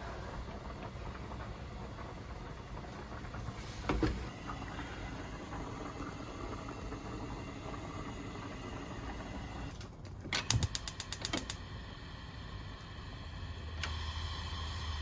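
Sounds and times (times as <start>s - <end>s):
rapid sharp clicks: 10.4s - 11.6s.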